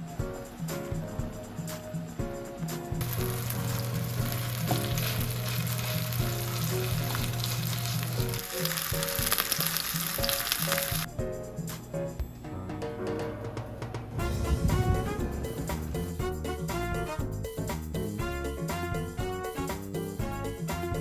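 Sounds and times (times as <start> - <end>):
background music: 0.0 - 21.0
food sizzling in a frying pan: 3.0 - 11.1.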